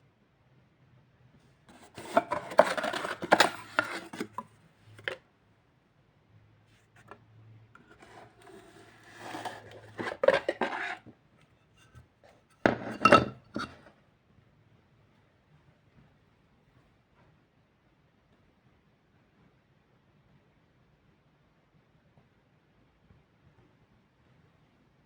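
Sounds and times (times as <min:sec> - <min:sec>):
scraping and clattering: 0:01.7 - 0:05.2, 0:07.8 - 0:11.1, 0:11.8 - 0:13.9.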